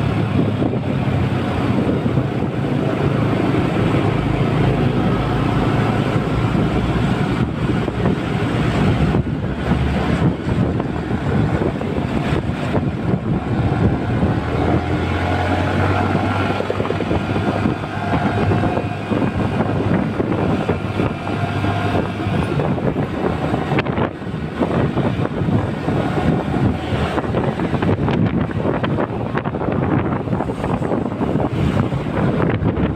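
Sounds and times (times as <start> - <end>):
wind on microphone: 0.0 - 32.9.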